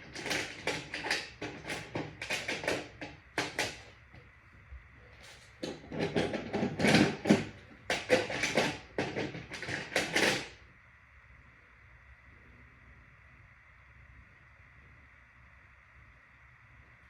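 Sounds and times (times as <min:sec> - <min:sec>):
knocks and rustles of handling: 0:05.1 - 0:10.5.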